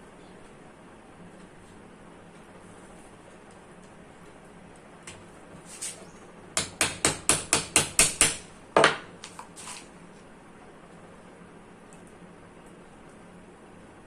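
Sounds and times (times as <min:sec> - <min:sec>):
hammer tapping: 0:06.6 - 0:09.0.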